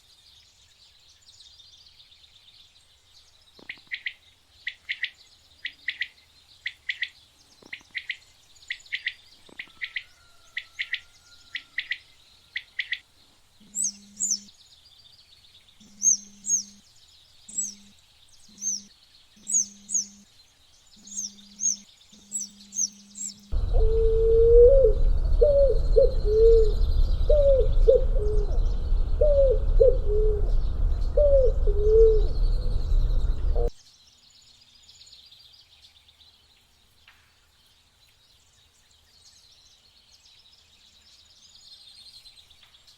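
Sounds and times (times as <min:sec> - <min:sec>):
bird chirps: 0:13.6 - 0:33.8
faint low hum: 0:21.0 - 0:33.7
rumbling background: 0:23.5 - 0:33.7.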